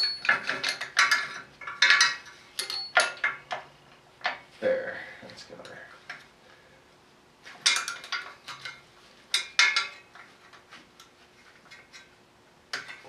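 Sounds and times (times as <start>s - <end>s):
wrench metallic clicks and clinks: 0.0s - 3.6s.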